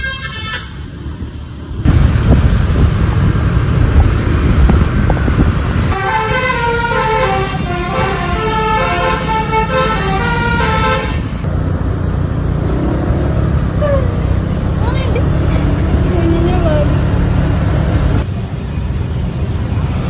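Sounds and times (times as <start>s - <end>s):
multi-tone bus horn melody: 0.0s - 0.9s, 5.8s - 11.5s
bus engine rumble: 0.0s - 20.0s
road noise: 0.0s - 20.0s.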